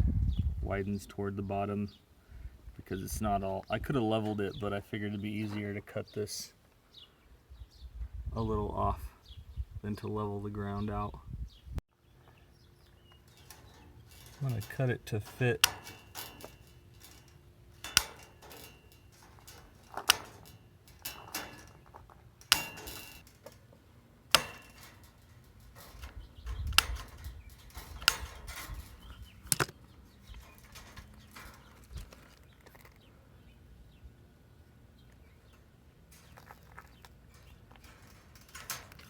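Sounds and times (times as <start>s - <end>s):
wire snippers cutting metal mesh: 13.2s - 23.7s, 24.3s - 32.3s, 37.3s - 39.0s.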